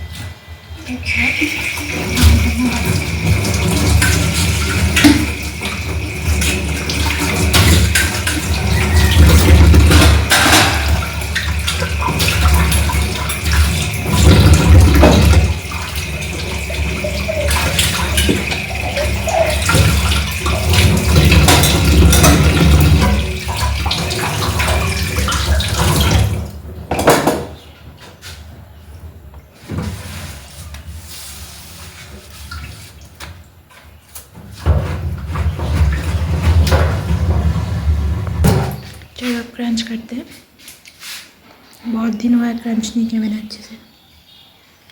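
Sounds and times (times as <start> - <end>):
tap water running into sink: 0.8 - 27.5, 34.2 - 39.1.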